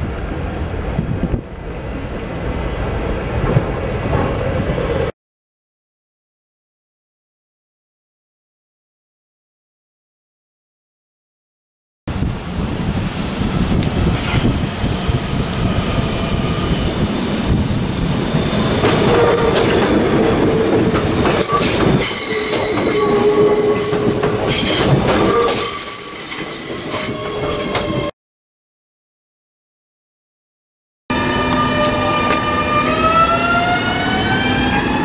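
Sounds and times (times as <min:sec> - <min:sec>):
train rumbling on rails: 0:00.0 - 0:05.1, 0:12.1 - 0:28.1, 0:31.1 - 0:35.0
train wheels squealing: 0:13.0 - 0:15.0, 0:21.4 - 0:28.1.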